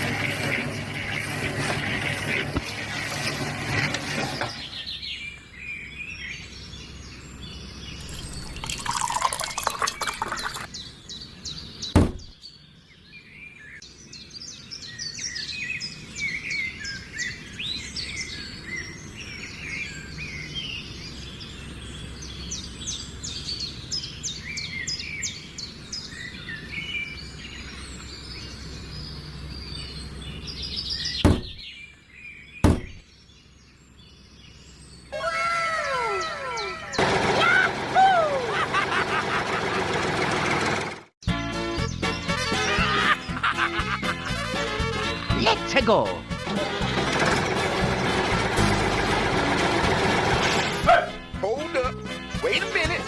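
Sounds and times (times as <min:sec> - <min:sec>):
birds chirping: 0:00.0 - 0:49.6, 0:50.6 - 0:53.0
sharp knock: 0:12.0 - 0:12.3, 0:31.2 - 0:31.6, 0:32.6 - 0:33.0.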